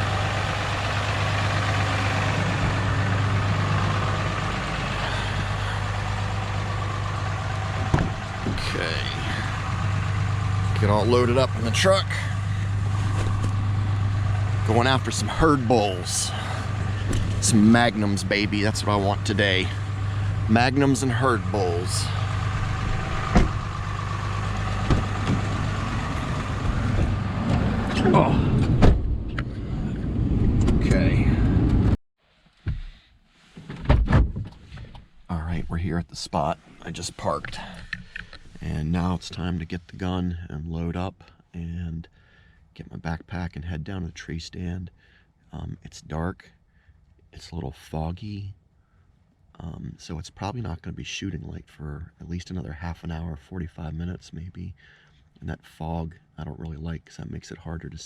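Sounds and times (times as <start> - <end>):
truck engine humming: 0.0 - 31.9.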